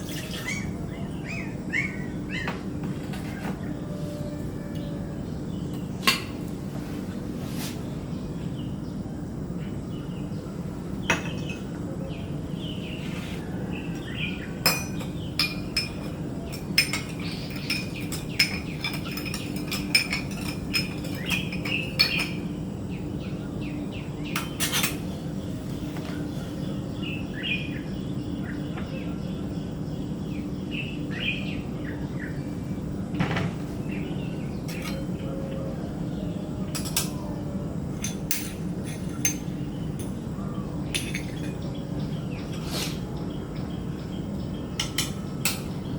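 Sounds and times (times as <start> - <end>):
small birds chirping: 0.0 - 45.9
cutlery and dishes clinking: 14.7 - 22.4, 24.4 - 25.0, 34.7 - 35.1, 41.0 - 41.7.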